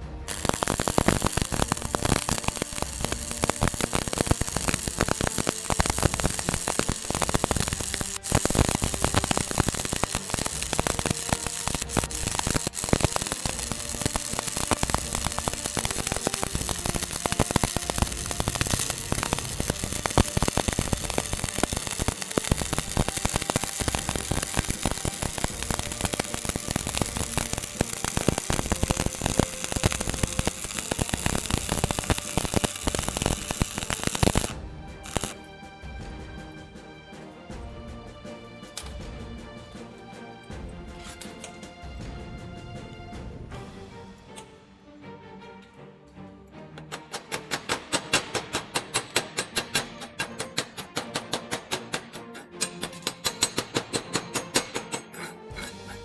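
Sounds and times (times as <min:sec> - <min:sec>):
welding arc crackling: 0:00.0 - 0:35.4, 0:47.3 - 0:55.1.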